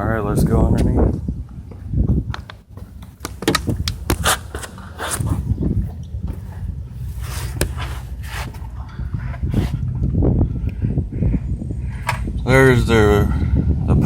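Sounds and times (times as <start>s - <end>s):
steady low rumble: 0.0s - 14.0s
clicks knocks and scrapes: 7.2s - 9.8s.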